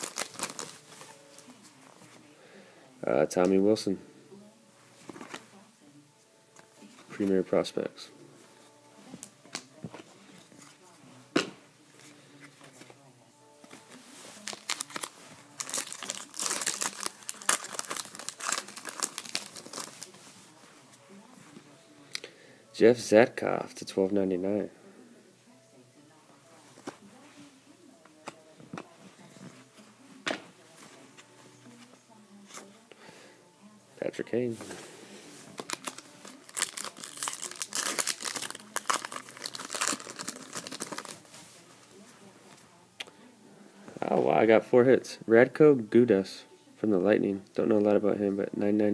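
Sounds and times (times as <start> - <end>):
foil wrapper crinkling and tearing: 0.0 - 1.1, 14.4 - 20.1, 35.6 - 41.3.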